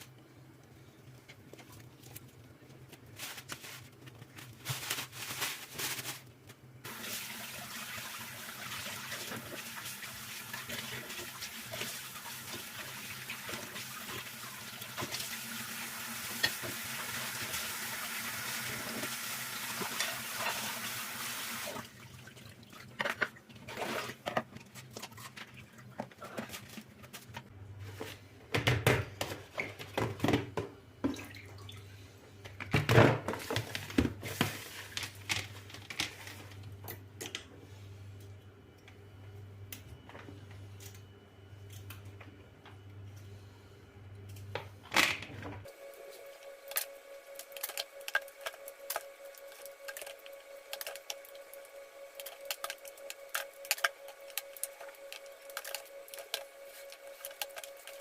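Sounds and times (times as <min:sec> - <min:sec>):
water tap running: 0:06.8 - 0:22.1
items clicking and clattering: 0:46.7 - 0:51.6.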